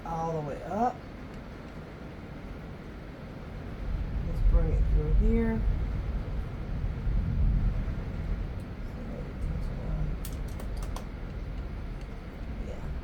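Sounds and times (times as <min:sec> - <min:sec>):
steady low rumble: 0:03.4 - 0:13.0
small sharp clicks: 0:10.2 - 0:11.2.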